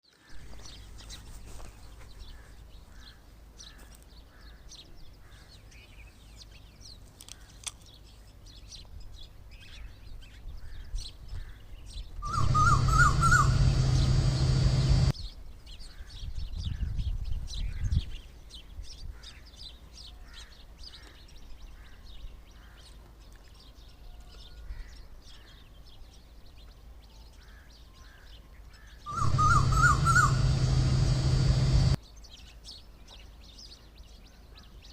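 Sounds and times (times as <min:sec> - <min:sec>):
small birds chirping: 0:00.0 - 0:34.9
low hum: 0:12.2 - 0:15.1, 0:29.1 - 0:32.0
wavering trilling bird call: 0:12.2 - 0:15.1, 0:29.1 - 0:32.0.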